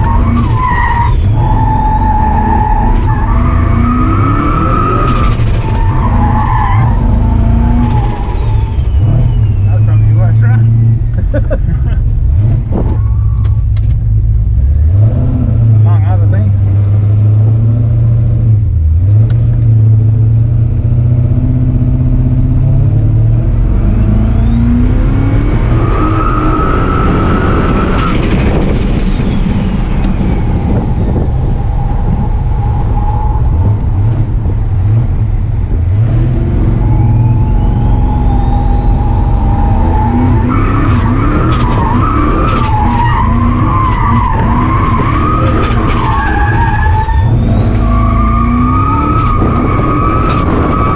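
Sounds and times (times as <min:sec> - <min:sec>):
tyre squeal: 0:00.0 - 0:10.9, 0:36.8 - 0:50.9
truck engine revving: 0:00.0 - 0:50.9.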